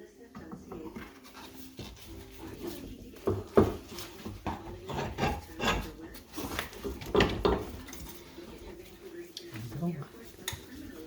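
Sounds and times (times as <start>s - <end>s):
knocks and scrapes on metal parts: 3.2s - 8.2s.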